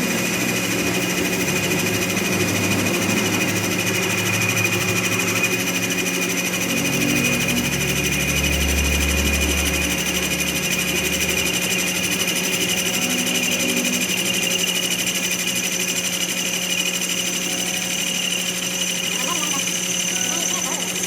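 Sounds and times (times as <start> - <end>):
machine humming with rapid chatter: 0.0 - 21.0.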